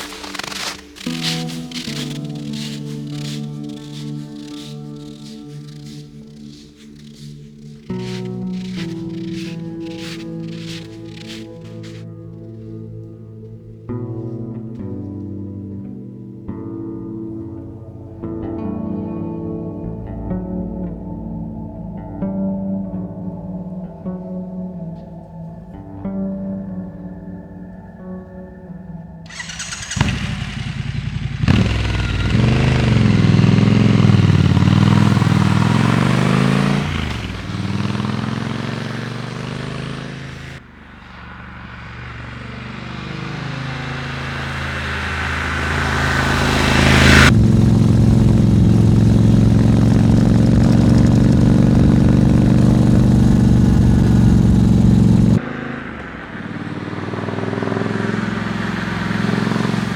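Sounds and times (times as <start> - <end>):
motorcycle engine revving: 0.0 - 12.7, 29.3 - 59.9.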